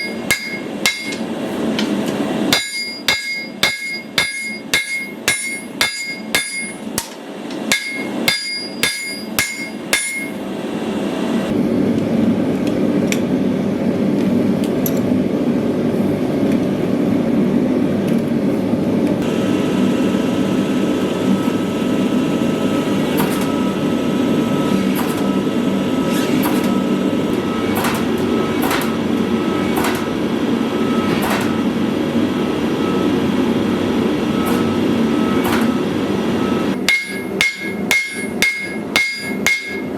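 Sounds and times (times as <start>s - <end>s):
hammer ringing on steel blade: 0.0s - 1.2s, 2.5s - 10.4s, 36.8s - 39.9s.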